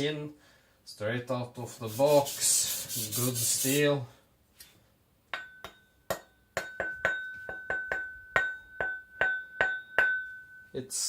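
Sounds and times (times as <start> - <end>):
cleaver blade tapped and ringing: 5.3 - 10.8.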